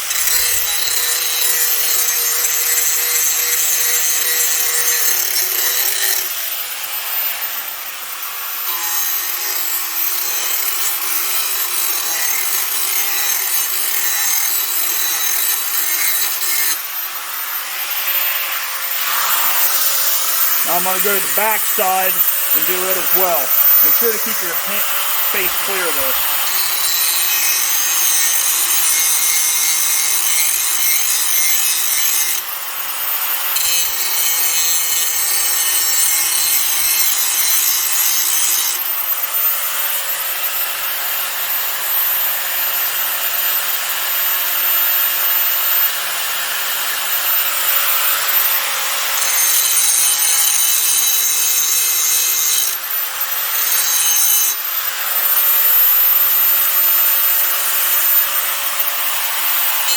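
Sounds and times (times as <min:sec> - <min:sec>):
angle grinder motor whine: 0:14.7 - 0:31.6, 0:53.1 - 0:59.9
grinding wheel on steel: 0:57.3 - 0:59.9.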